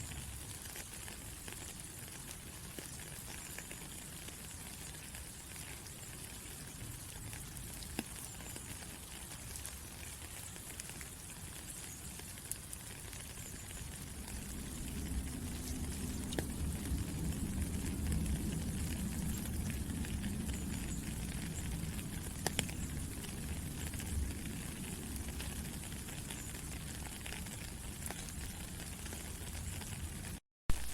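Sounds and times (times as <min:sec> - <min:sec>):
steady rain falling: 0:00.0 - 0:30.9
low rumble: 0:13.8 - 0:25.8.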